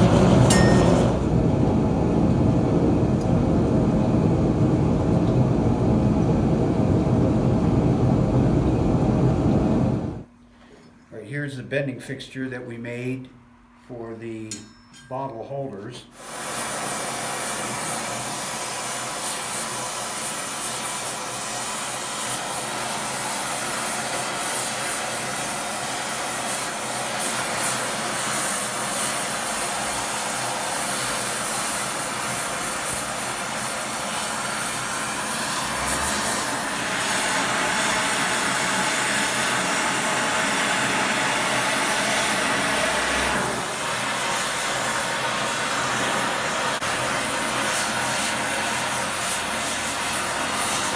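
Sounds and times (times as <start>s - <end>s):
forge rushing noise: 0.0s - 4.5s, 32.8s - 44.5s.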